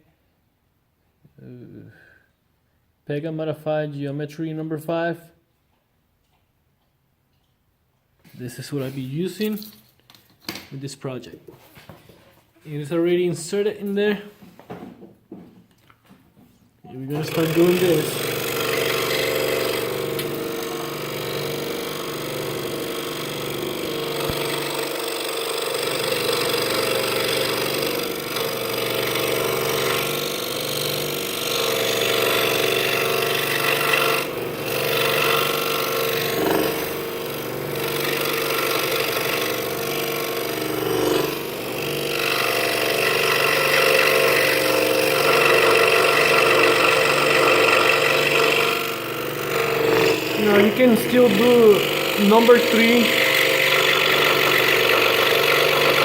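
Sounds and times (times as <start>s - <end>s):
scroll saw cutting wood: 16.9s - 56.0s.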